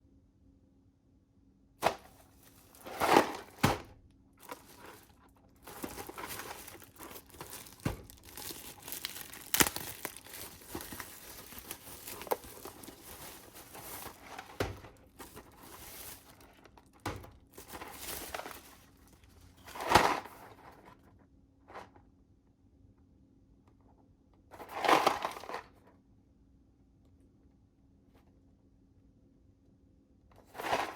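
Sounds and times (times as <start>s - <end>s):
packaging tearing and crinkling: 1.8s - 20.4s
packaging rustling: 1.8s - 20.6s.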